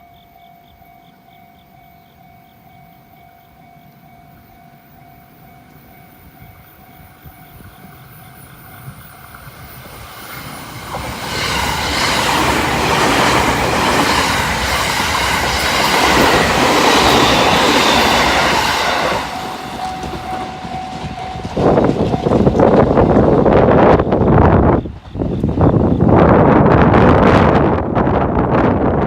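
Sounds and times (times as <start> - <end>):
train passing: 0.0 - 29.0
train wheels clattering over rail joints: 8.5 - 26.1
level crossing alarm ringing: 10.7 - 22.6.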